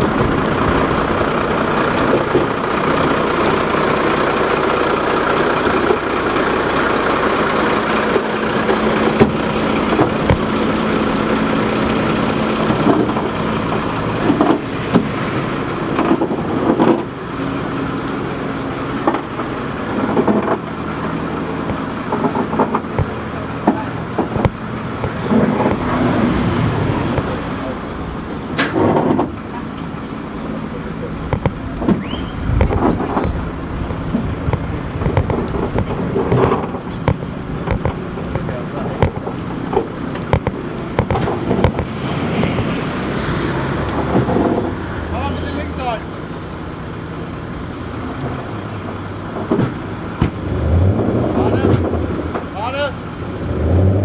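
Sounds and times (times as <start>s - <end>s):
large vehicle engine idling: 0.0s - 54.0s
knocks and clanks: 7.8s - 17.2s, 19.0s - 29.9s, 31.0s - 45.3s, 47.4s - 53.0s.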